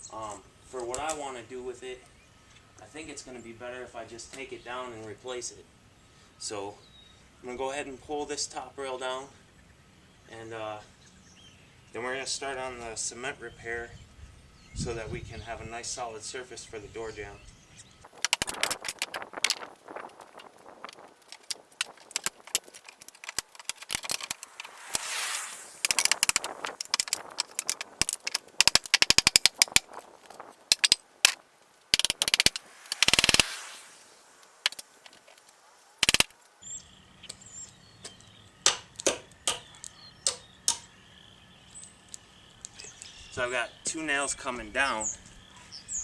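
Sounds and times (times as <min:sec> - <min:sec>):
rapid clicks: 0:18.1 - 0:36.5
wood and nails cracking: 0:18.1 - 0:36.5.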